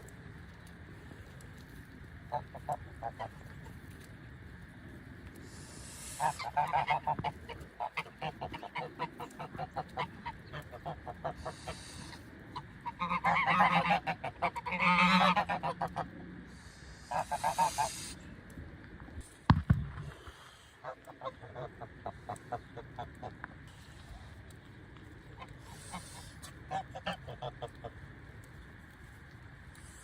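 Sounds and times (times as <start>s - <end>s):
geese honking: 2.3s - 3.6s, 5.5s - 18.2s, 20.8s - 24.2s, 25.4s - 28.0s.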